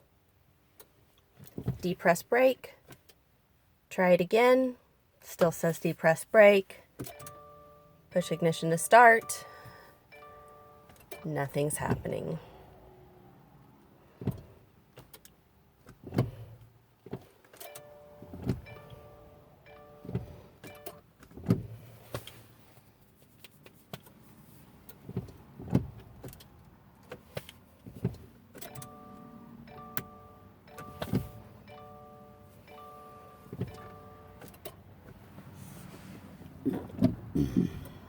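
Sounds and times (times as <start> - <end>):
dashboard warning chimes: 5.9 - 12.6, 17.6 - 21.1, 28.6 - 35.0.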